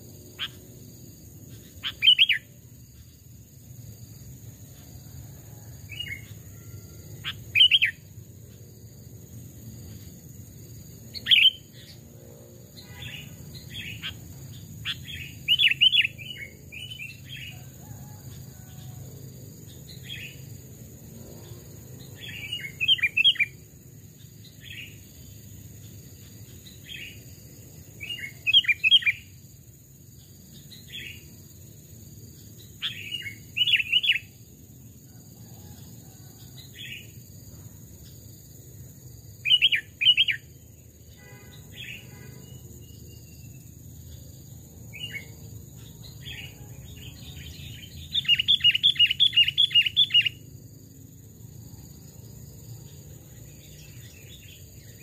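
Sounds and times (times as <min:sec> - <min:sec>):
bulbul singing: 0:00.3 - 0:03.2, 0:05.8 - 0:08.7, 0:09.7 - 0:12.1, 0:12.7 - 0:18.7, 0:21.4 - 0:29.4, 0:32.4 - 0:34.4, 0:39.4 - 0:50.5.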